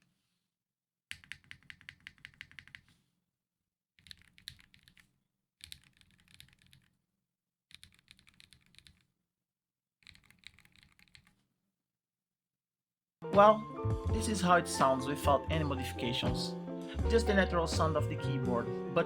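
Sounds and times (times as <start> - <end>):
mechanical keyboard typing: 1.1 - 2.8, 4.0 - 6.9, 7.7 - 9.1, 10.0 - 11.4.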